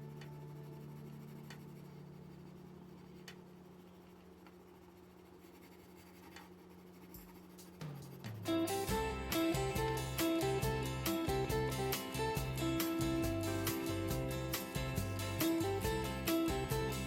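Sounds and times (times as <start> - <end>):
drawing tool scratching paper: 0.5 - 8.6.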